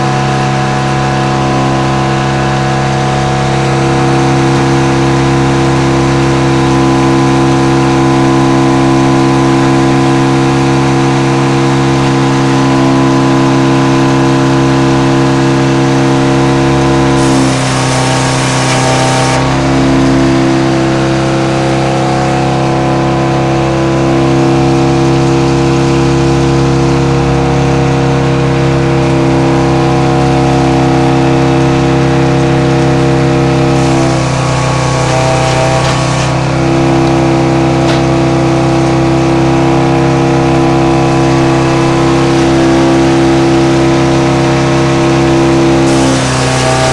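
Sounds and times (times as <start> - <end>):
sawmill engine running: 0.0 - 46.9
hiss: 17.2 - 20.3, 33.8 - 36.5, 45.8 - 46.9.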